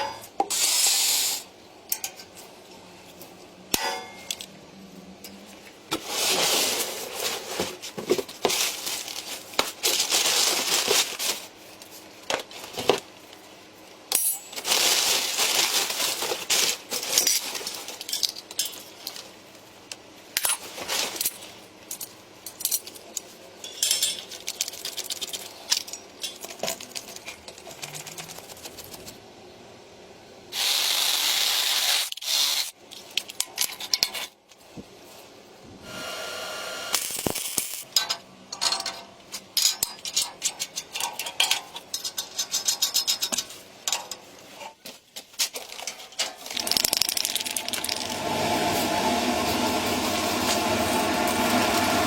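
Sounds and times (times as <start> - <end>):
small metal parts clinking: 16.9 - 19.3, 21.2 - 28.3, 37.0 - 44.3, 45.4 - 48.1.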